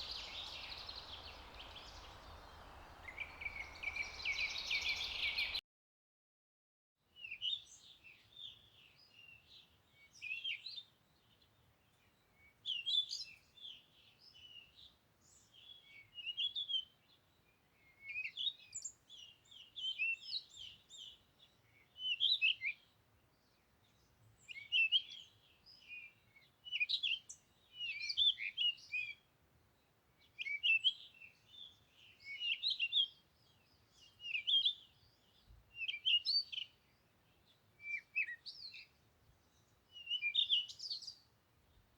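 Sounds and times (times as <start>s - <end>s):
songbirds twittering: 0.0s - 5.6s, 30.2s - 41.9s.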